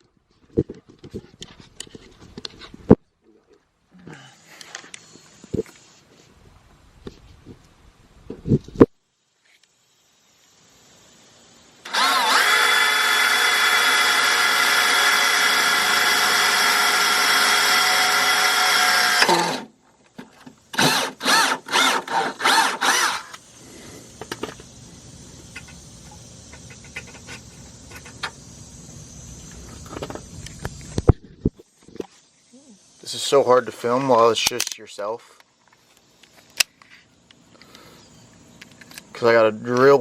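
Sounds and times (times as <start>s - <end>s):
power drill whining: 11.9s - 19.7s, 20.7s - 23.4s
faint clicks and handling: 34.4s - 34.8s.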